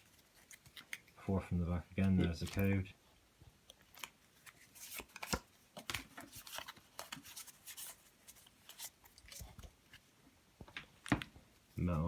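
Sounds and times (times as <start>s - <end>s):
trading cards rustling: 0.0s - 1.2s, 2.0s - 2.9s, 3.8s - 10.1s.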